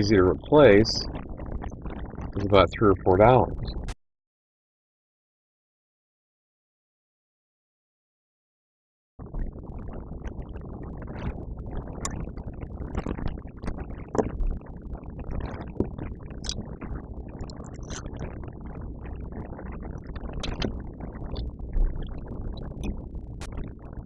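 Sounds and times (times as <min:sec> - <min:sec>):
low steady hum: 0:00.0 - 0:04.0, 0:09.3 - 0:24.0.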